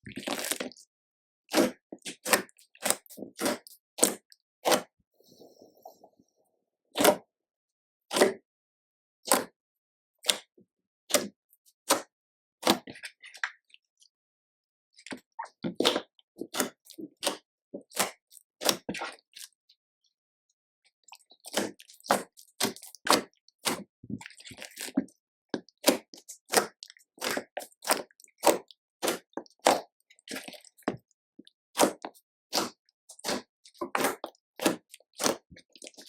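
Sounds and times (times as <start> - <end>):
slime squelching: 0.1 - 0.8, 1.5 - 6.2, 21.1 - 31.1, 31.8 - 36.0.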